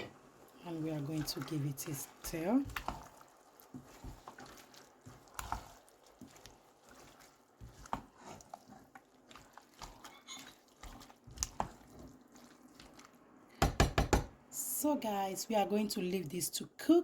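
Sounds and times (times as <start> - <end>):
wet squelching of stirred filling: 0.2 - 13.9
spoon knocking against pot: 13.6 - 14.4.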